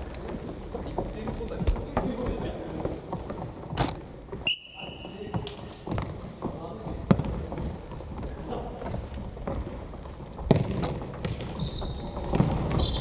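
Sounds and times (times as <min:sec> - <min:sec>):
feet on gymnasium floor: 0:00.0 - 0:13.0
ball kicked and bouncing: 0:05.3 - 0:13.0
high squeak: 0:11.6 - 0:13.0.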